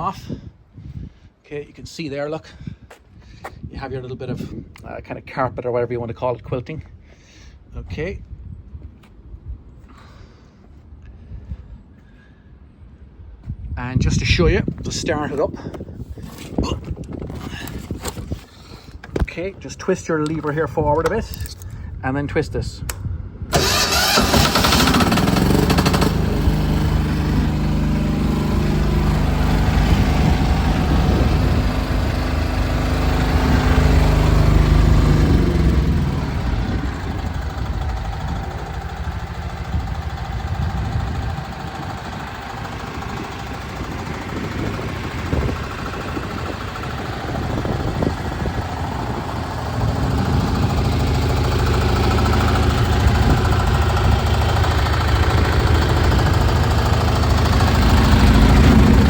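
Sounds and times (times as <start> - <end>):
excavator diesel engine running: 23.5 - 59.0.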